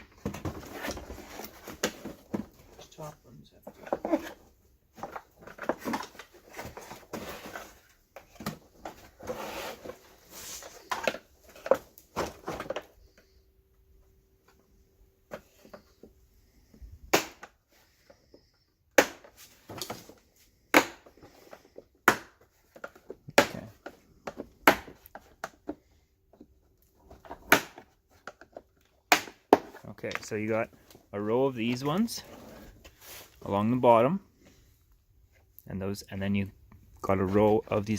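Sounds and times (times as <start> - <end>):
handling and scraping: 0.0 - 35.6, 36.6 - 37.9.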